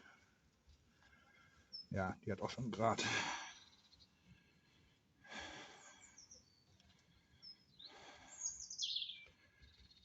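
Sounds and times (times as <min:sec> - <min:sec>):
birds chirping: 0:00.0 - 0:10.0
high downward sliding bird calls: 0:07.4 - 0:10.0.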